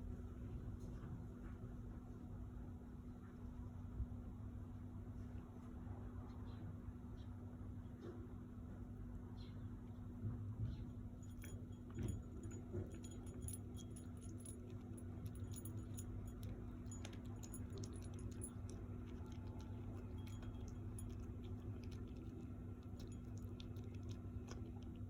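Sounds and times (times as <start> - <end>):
steady low hum: 0.0 - 25.0
small clicks and clinks: 11.0 - 25.0.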